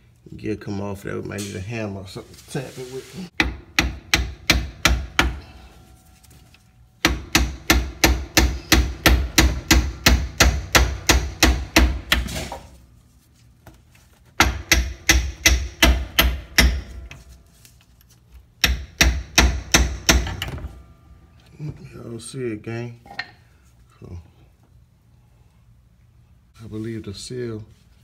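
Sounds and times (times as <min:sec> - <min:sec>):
hammer striking metal: 0:03.4 - 0:06.0, 0:07.0 - 0:12.6, 0:14.4 - 0:17.2, 0:18.6 - 0:20.9.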